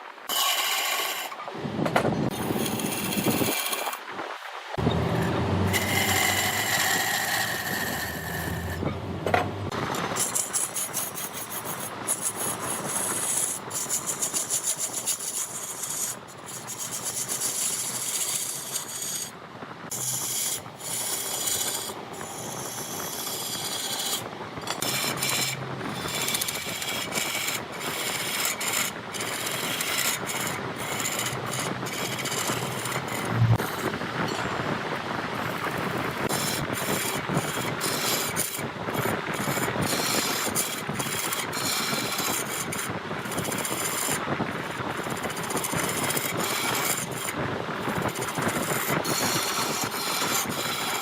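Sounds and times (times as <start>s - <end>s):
lathe tool scraping wood: 0.3s - 1.3s, 4.8s - 11.5s, 19.9s - 34.4s, 45.2s - 47.3s
faint high whine: 4.8s - 9.8s.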